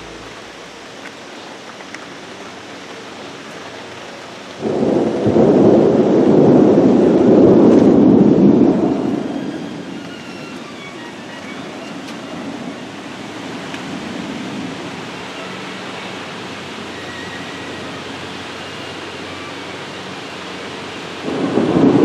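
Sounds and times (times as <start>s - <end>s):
thunder rumbling: 0.0s - 0.9s, 4.6s - 11.6s, 21.0s - 22.0s
steady rain: 0.0s - 22.0s.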